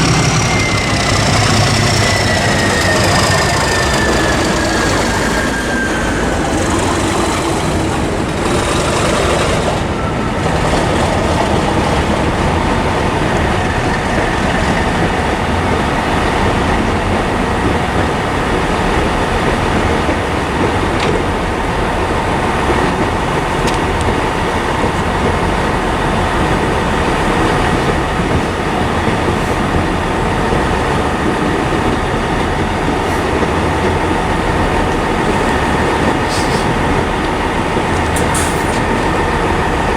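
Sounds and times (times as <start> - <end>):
tone gliding down: 0.0 - 12.6
diesel train engine drone: 0.0 - 39.9
wheel and rail noise: 0.0 - 39.9.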